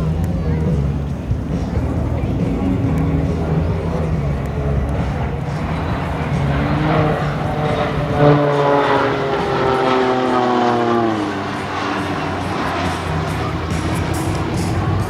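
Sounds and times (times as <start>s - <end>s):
propeller aircraft flying past: 0.0s - 15.0s.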